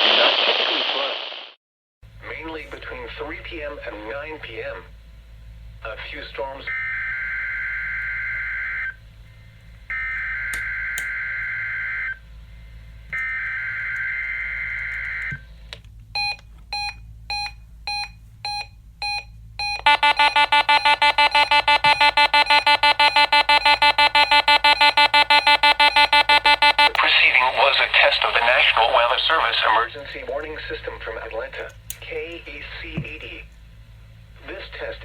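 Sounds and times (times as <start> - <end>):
short electronic beeps: 16.2 - 27.0
fast electronic alarm beeping: 16.2 - 29.6.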